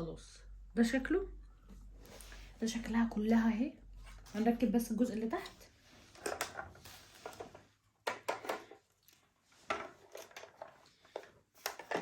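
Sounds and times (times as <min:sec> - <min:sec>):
plastic parts clicking and knocking: 0:06.2 - 0:12.0.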